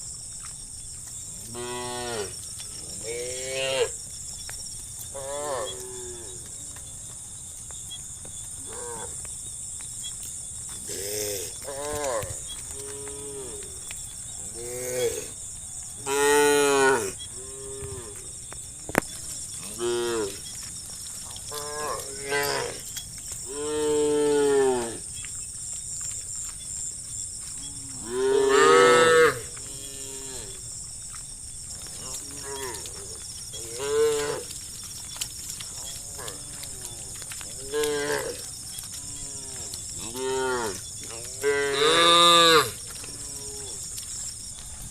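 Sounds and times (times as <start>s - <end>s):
cows mooing: 5.1s - 6.4s, 16.0s - 18.2s, 21.4s - 22.8s, 27.6s - 30.6s, 31.9s - 34.6s, 35.7s - 43.8s.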